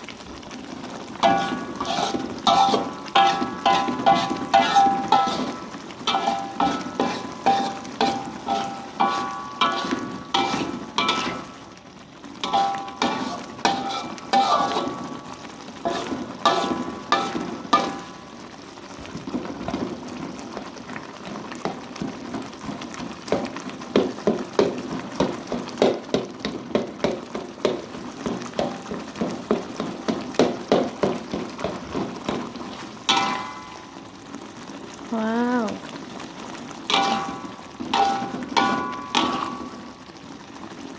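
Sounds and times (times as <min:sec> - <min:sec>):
frying sizzle: 0:00.0 - 0:40.9
metal spatula scraping a pan: 0:01.1 - 0:18.4, 0:27.7 - 0:34.0, 0:36.8 - 0:40.0
pan ringing: 0:02.5 - 0:11.6, 0:12.4 - 0:15.5, 0:33.1 - 0:34.1, 0:36.9 - 0:39.9.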